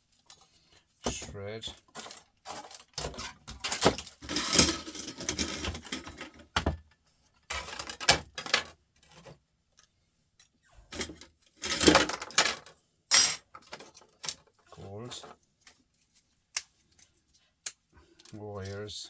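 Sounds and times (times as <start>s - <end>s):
small laptop parts clattering: 0.2s - 9.8s.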